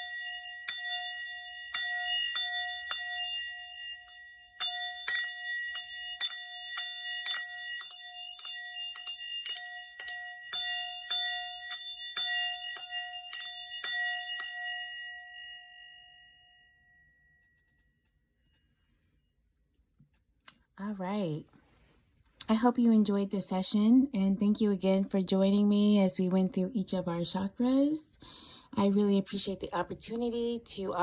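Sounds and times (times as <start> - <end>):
small bells jingling: 0.0 - 17.4
singing bowl ringing: 0.0 - 18.7.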